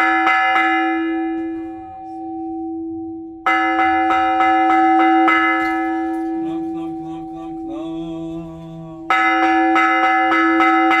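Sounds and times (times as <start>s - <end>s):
bell struck in quick runs: 3.5s - 7.6s.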